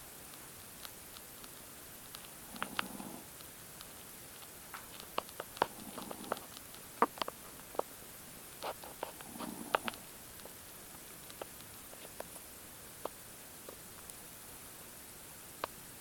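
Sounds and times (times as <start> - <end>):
soft rasping snore: 2.4 - 3.3, 5.6 - 6.6, 8.9 - 10.1.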